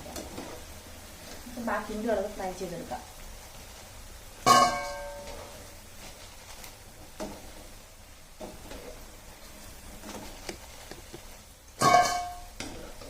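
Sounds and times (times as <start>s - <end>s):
metal utensil clanging on cookware: 4.5s - 5.4s, 11.8s - 13.0s.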